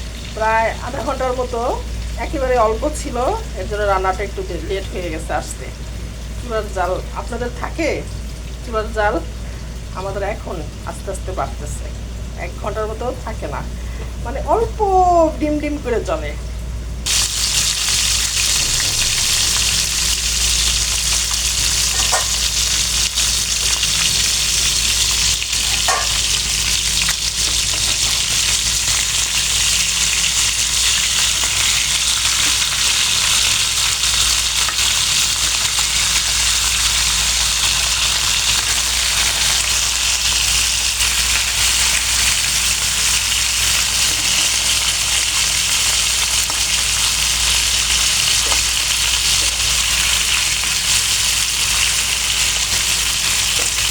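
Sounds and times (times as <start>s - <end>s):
fish sizzling in hot oil: 17.0s - 53.9s.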